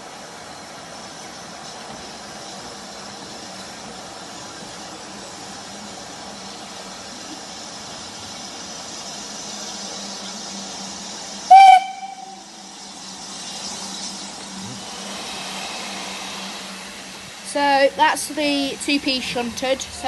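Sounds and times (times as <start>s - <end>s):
steady low hiss: 0.0s - 20.0s
steam locomotive whistle blast: 11.5s - 12.5s.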